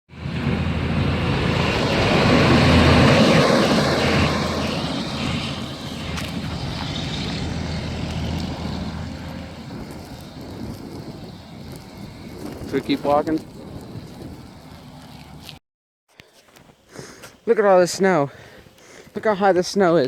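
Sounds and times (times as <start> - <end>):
wind buffeting microphone: 0.1 - 15.6.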